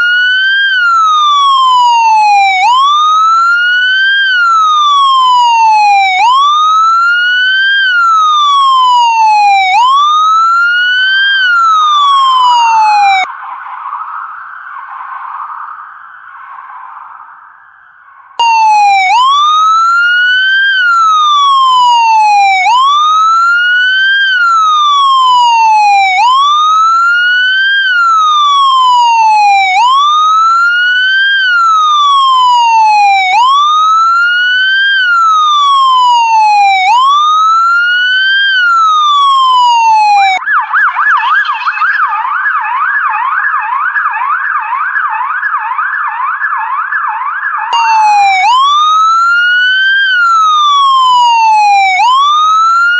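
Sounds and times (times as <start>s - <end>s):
police siren wailing and yelping: 0.0s - 13.3s, 18.4s - 52.9s.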